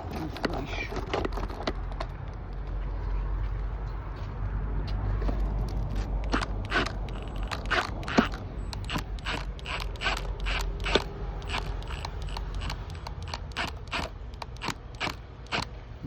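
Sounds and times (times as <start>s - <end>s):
hand ratchet clicking: 5.7s - 15.8s.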